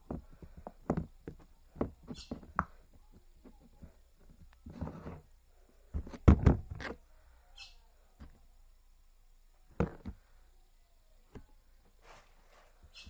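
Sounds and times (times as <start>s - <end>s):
faint squeak: 6.8s - 8.1s, 12.0s - 13.0s.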